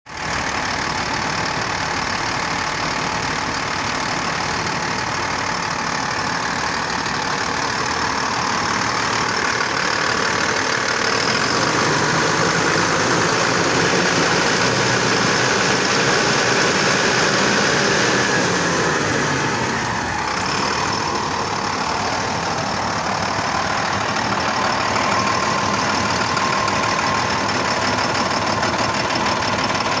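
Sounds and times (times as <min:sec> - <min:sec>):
diesel generator engine running: 0:00.1 - 0:30.0.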